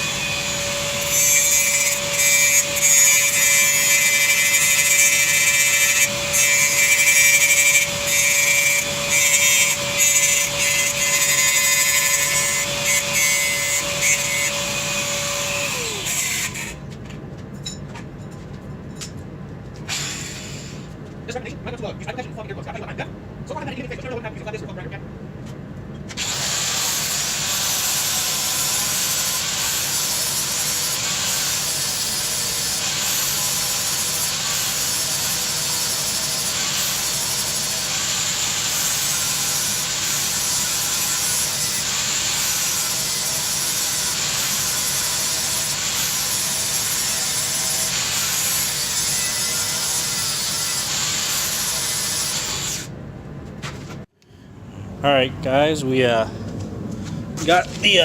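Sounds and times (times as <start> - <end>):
angle grinder grinding steel: 0.0 - 16.8, 26.2 - 52.9.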